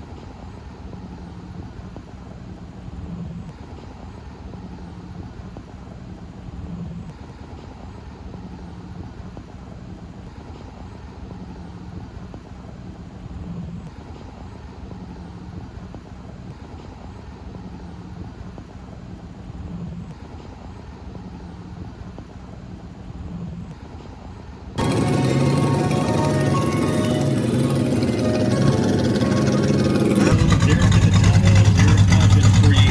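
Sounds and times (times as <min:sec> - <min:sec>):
low hum: 0:24.8 - 0:32.9
vehicle engines rumbling: 0:24.8 - 0:32.9.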